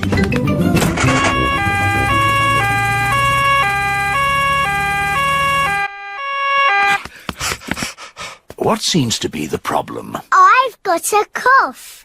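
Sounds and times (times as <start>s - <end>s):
cartoon two-tone siren: 0.9s - 7.0s.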